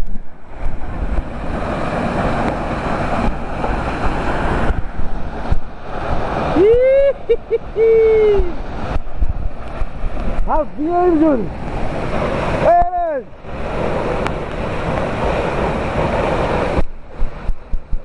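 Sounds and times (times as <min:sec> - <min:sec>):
waterfall roaring: 0:00.0 - 0:18.0
wind buffeting microphone: 0:00.0 - 0:18.0
person whooping: 0:06.5 - 0:08.6.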